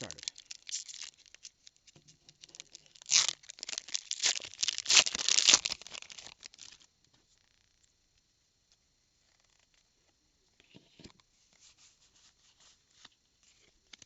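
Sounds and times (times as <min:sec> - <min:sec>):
foil wrapper crinkling and tearing: 0:00.0 - 0:06.9.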